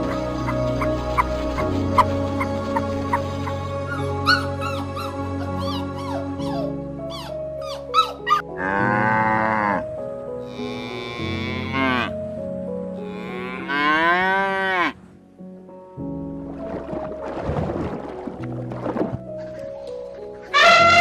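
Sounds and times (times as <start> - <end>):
background music with held notes: 0.0 - 21.0
cow mooing: 8.6 - 12.2, 13.0 - 15.0.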